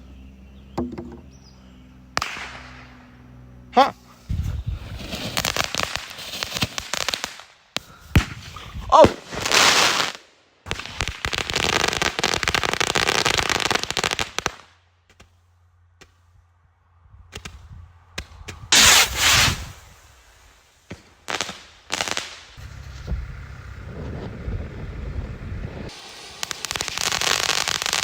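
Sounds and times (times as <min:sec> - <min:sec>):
fireworks crackling pops: 0:02.1 - 0:03.2, 0:04.2 - 0:16.4, 0:17.3 - 0:28.0
fireworks hissing burst: 0:04.1 - 0:14.7, 0:18.7 - 0:28.0.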